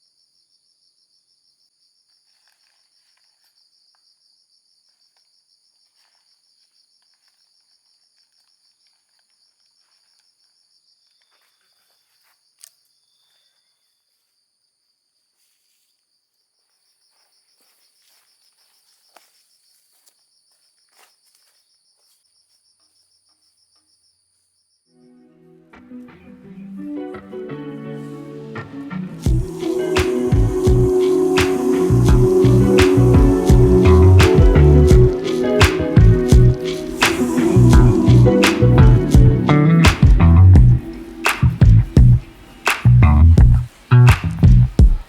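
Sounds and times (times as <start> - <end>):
insects trilling: 0.0 - 25.2, 29.1 - 38.6, 40.8 - 41.6.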